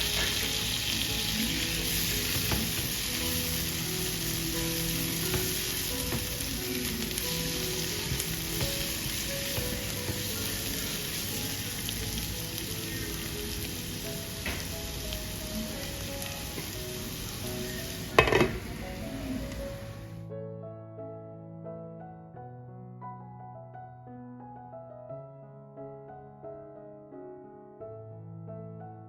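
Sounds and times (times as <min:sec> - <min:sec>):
food sizzling in a pan: 0:00.0 - 0:20.2
soft background music: 0:00.0 - 0:29.0.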